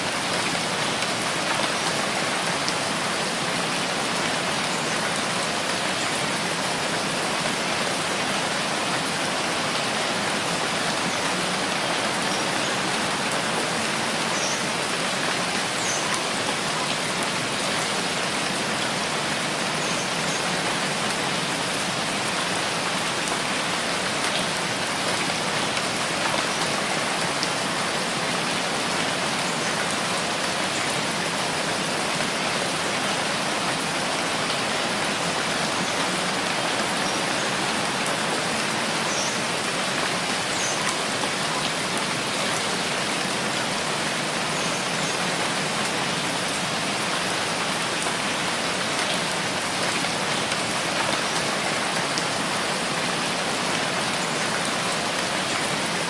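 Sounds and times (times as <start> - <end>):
steady rainfall hiss: 0.0 - 56.0.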